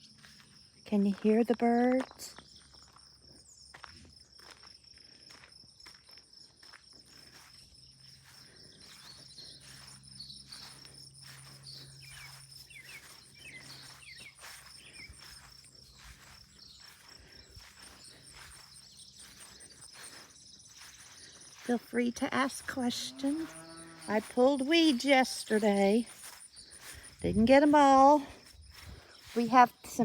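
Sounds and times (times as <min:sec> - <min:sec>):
footsteps walking outdoors: 0:00.0 - 0:30.0
insects trilling: 0:00.0 - 0:30.0
birds chirping: 0:07.1 - 0:30.0.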